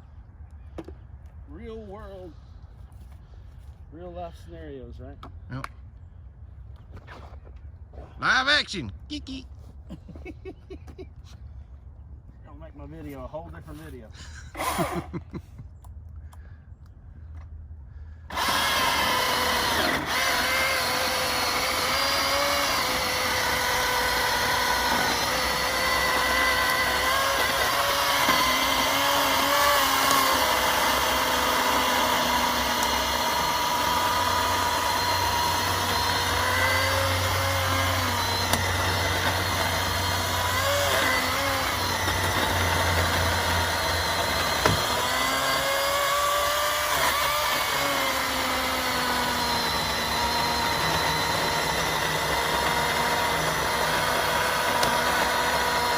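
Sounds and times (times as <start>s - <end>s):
cordless chainsaw cutting log: 14.4s - 15.2s, 18.3s - 55.9s.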